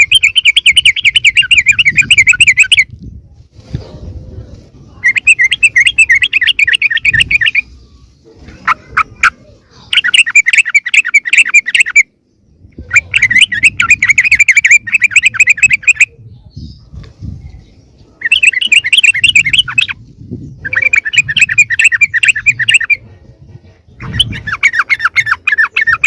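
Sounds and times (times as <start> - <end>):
bulbul chattering call: 0.0 - 2.9, 5.0 - 7.8, 8.4 - 16.2, 18.2 - 23.0, 23.9 - 26.0.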